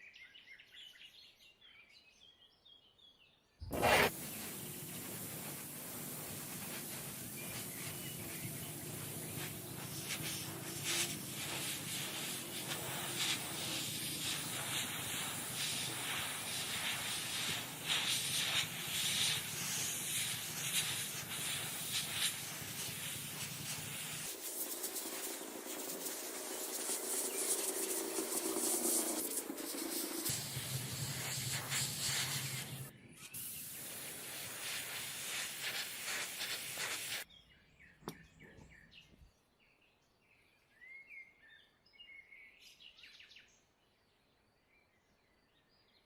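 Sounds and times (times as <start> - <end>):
hissing spray: 3.7 - 37.3.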